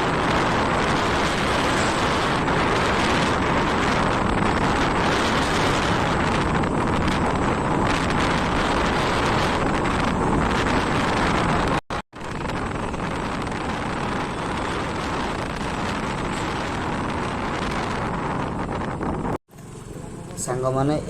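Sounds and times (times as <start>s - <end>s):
moving vehicle rumble: 0.0s - 21.0s
wind buffeting microphone: 0.0s - 21.0s.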